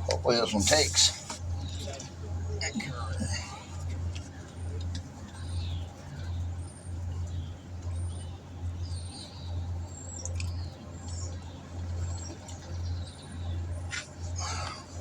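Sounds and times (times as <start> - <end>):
pulsing low hum: 0.0 - 15.0
faint clicks: 10.1 - 11.4.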